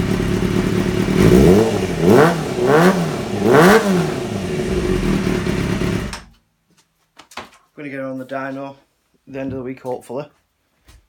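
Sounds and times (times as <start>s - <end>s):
motorcycle engine revving and idling: 0.0s - 6.3s.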